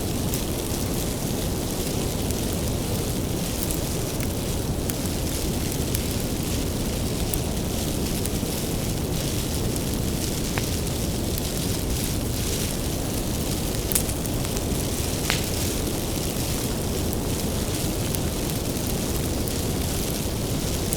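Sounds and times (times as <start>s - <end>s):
fire popping: 0.0s - 20.9s
wood fire rumbling and hissing: 0.0s - 20.9s.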